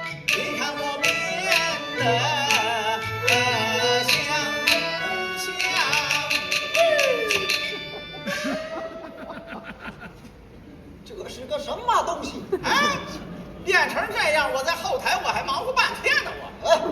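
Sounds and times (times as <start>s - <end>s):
wavering opera melody: 0.0s - 9.7s
sharp percussion clacks: 5.6s - 7.9s.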